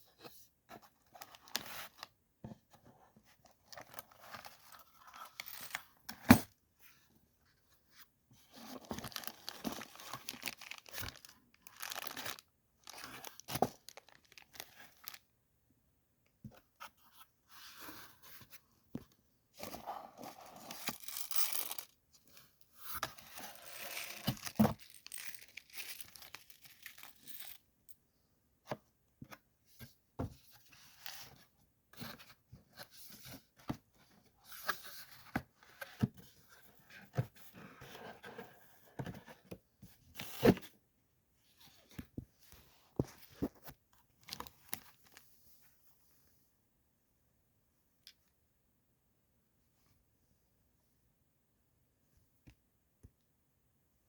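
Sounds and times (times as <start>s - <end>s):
packaging tearing and crinkling: 9.1s - 15.2s.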